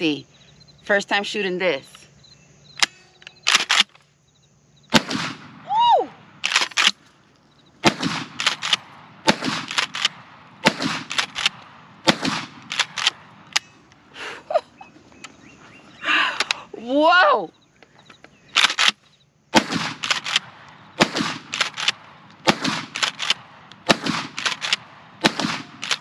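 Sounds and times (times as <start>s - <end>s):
shotgun shots echoing: 4.9s - 7.0s, 7.8s - 13.8s, 18.6s - 26.0s
person shouting woo: 5.7s - 6.2s.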